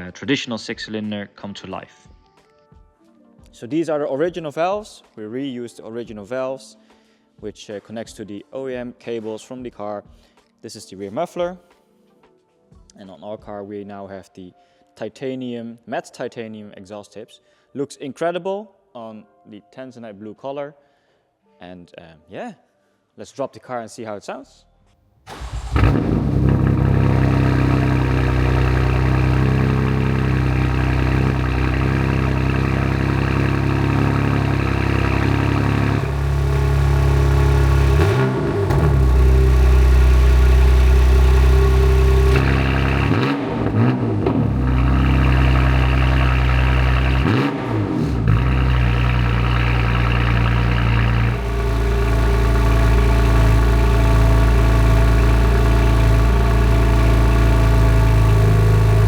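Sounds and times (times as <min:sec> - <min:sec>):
car engine starting and idling: 0:25.3 - 0:59.0.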